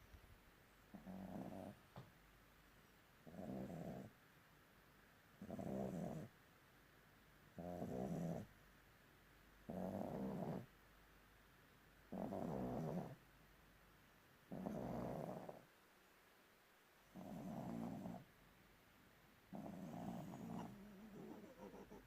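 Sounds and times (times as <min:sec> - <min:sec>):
dog snoring: 0:00.9 - 0:01.8, 0:03.2 - 0:04.1, 0:05.4 - 0:06.3, 0:07.6 - 0:08.5, 0:09.7 - 0:10.7, 0:12.1 - 0:13.2, 0:14.5 - 0:15.6, 0:17.1 - 0:18.3, 0:19.5 - 0:22.0.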